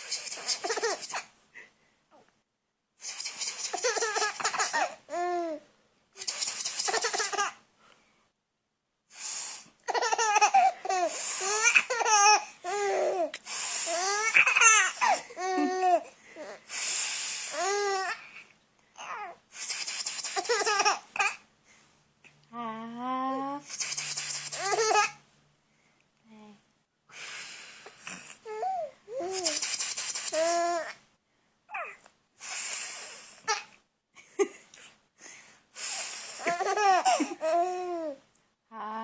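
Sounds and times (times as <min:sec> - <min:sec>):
breathy hissing noise: 0:00.0 - 0:01.8, 0:03.0 - 0:05.0, 0:06.2 - 0:08.2, 0:09.1 - 0:18.6, 0:19.5 - 0:22.1, 0:23.6 - 0:25.0, 0:27.1 - 0:30.8, 0:32.4 - 0:33.7, 0:34.6 - 0:37.4
baby laughing: 0:00.2 - 0:01.3, 0:03.7 - 0:05.4, 0:06.6 - 0:07.6, 0:09.8 - 0:13.3, 0:13.9 - 0:16.6, 0:20.2 - 0:21.4, 0:24.5 - 0:25.2, 0:36.4 - 0:38.1.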